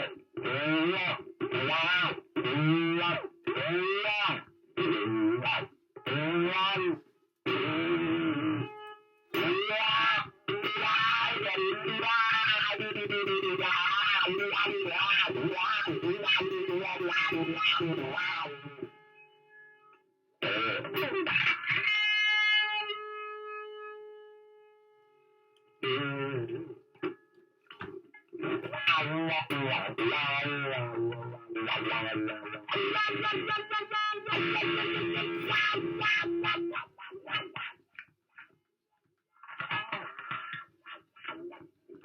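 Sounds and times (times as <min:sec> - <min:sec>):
distorted electric guitar: 0:00.0 - 0:37.8, 0:39.4 - 0:42.0.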